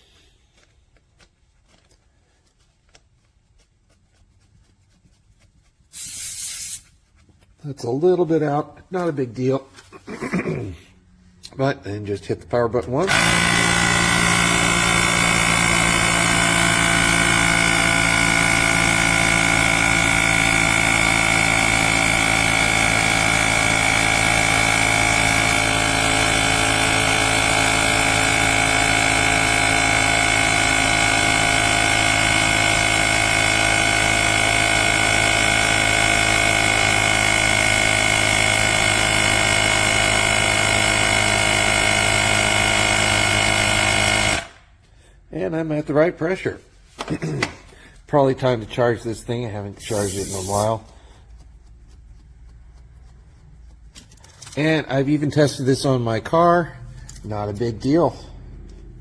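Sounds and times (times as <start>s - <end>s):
tire inflator droning with whine: 13.0s - 45.2s, 49.8s - 55.8s.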